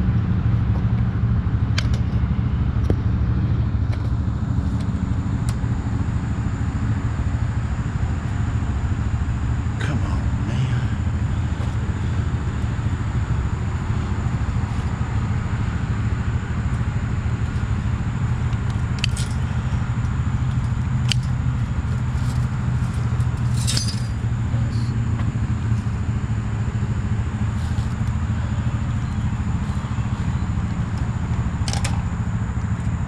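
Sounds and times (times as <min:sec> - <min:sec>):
engine running: 0:00.0 - 0:33.0
light metallic clinks: 0:22.2 - 0:24.9.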